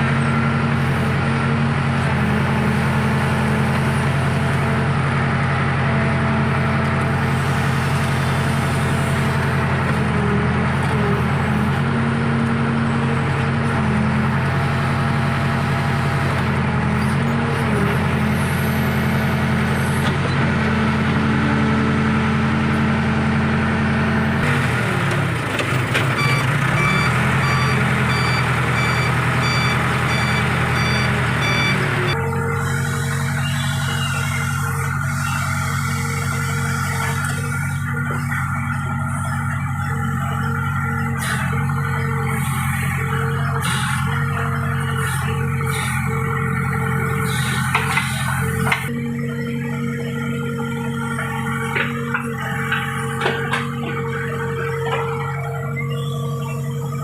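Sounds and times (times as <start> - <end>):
diesel engine running: 0.0 - 57.0
reversing alarm beeping: 26.2 - 40.8, 51.8 - 57.0.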